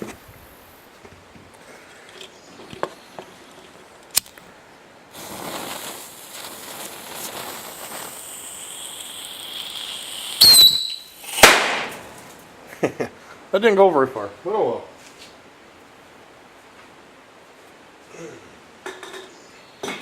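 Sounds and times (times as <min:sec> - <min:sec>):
fuse hissing: 0:05.1 - 0:12.2
rocket launch whoosh: 0:05.2 - 0:12.2
sharp bang: 0:10.4 - 0:12.2.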